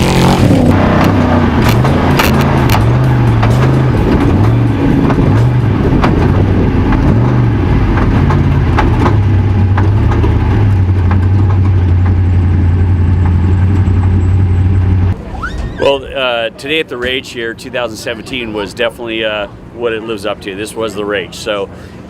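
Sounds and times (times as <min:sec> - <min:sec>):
race truck engine revving: 0:00.0 - 0:16.2.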